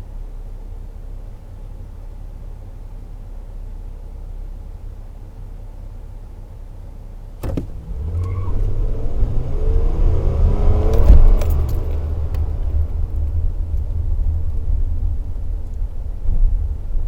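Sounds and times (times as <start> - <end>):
pickup engine revving: 7.4 - 17.0.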